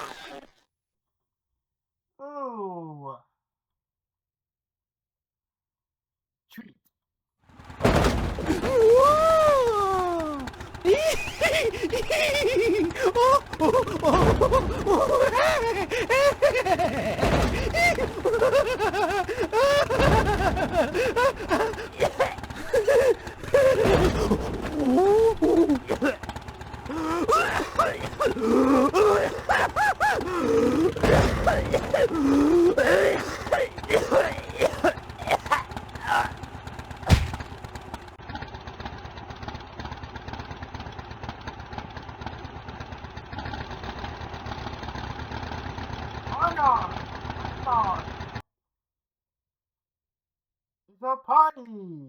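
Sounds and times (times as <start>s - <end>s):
cartoon voices giggling: 7.9s - 38.0s
heavy thump: 37.0s - 37.8s.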